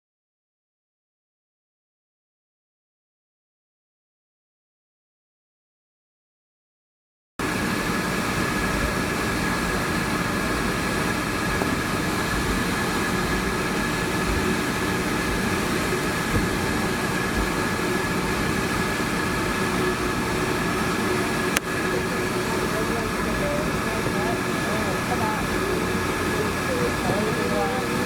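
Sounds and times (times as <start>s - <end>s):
airplane cabin engine rumble: 7.4s - 28.0s
high steady engine whine: 7.4s - 28.0s.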